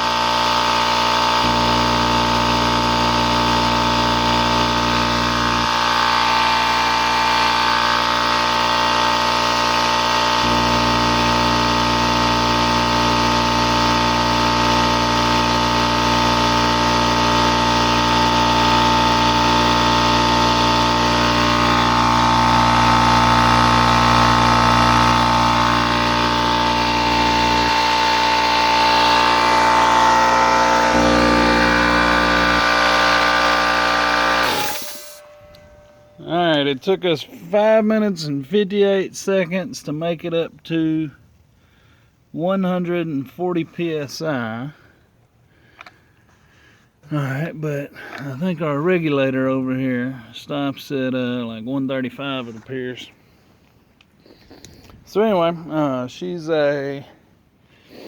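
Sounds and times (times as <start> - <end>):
air compressor running: 0.0 - 37.8, 56.9 - 58.0.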